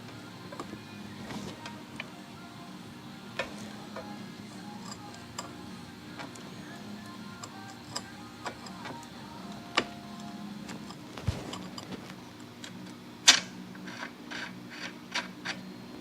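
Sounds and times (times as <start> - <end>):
chain grinder humming: 3.2 - 15.7.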